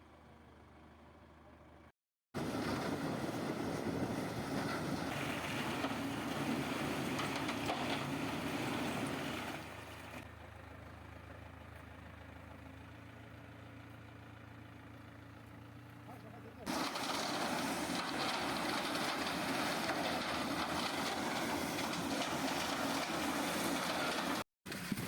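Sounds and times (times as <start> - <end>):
heavy machinery engine running: 2.4 - 10.3, 16.6 - 24.4.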